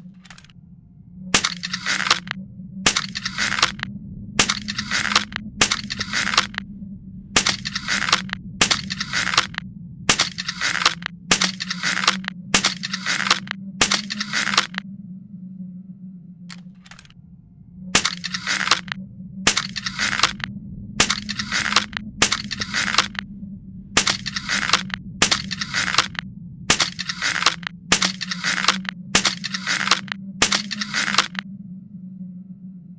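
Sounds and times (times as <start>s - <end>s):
steady low hum: 0.0s - 32.9s
crossbow clicks: 0.1s - 0.6s, 1.4s - 6.6s, 7.4s - 14.8s, 16.5s - 17.2s, 18.0s - 23.2s, 24.0s - 31.4s
short rasping scrape: 1.4s - 6.6s, 7.4s - 14.8s, 18.0s - 23.2s, 24.0s - 31.4s.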